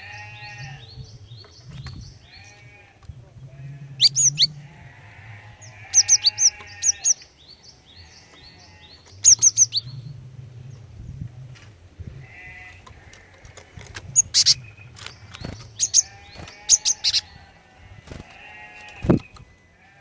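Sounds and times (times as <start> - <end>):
quieter bird call: 5.6 - 10.2
low hum: 9.0 - 12.3.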